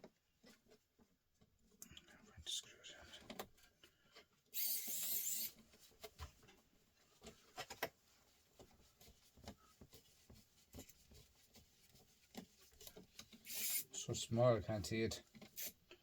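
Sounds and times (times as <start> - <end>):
light clicks and rubs: 0.0 - 16.0
hissing scrape: 4.6 - 5.6.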